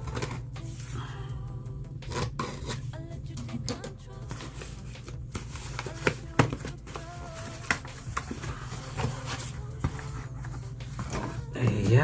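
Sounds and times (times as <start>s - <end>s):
packaging rustling: 4.3s - 12.0s.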